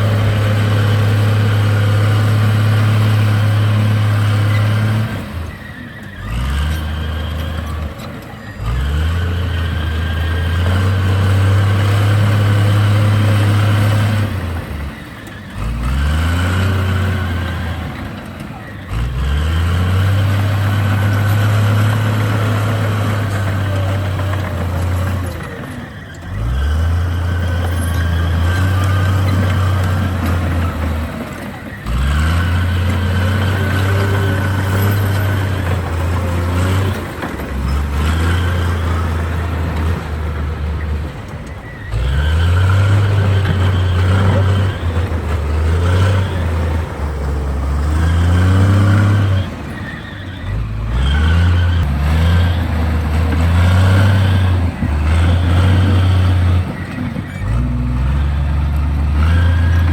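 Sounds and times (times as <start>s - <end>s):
bulldozer diesel engine revving: 0.0s - 59.9s.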